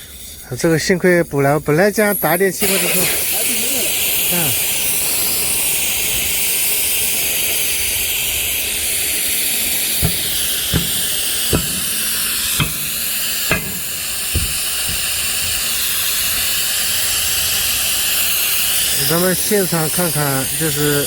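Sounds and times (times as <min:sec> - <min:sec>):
steady high hiss: 0:00.0 - 0:21.0
short sharp knocks: 0:10.0 - 0:16.0.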